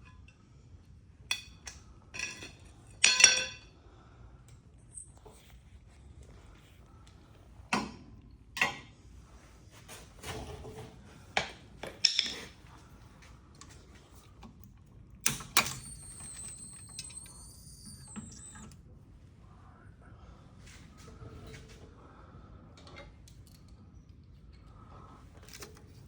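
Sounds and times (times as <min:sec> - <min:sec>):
metal tools clinking: 0:11.8 - 0:12.6.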